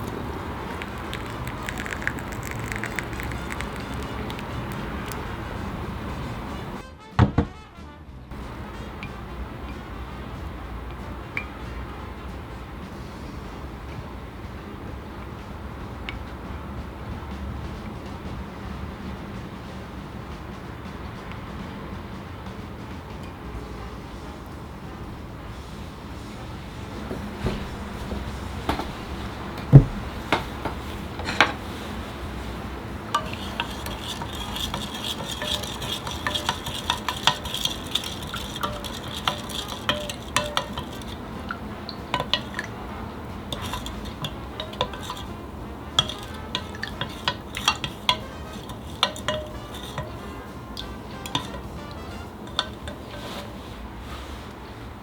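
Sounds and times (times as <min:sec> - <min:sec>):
utensil clinking against container: 0:00.0 - 0:05.4, 0:33.1 - 0:42.8, 0:43.5 - 0:53.5
louder knock: 0:07.2 - 0:07.6.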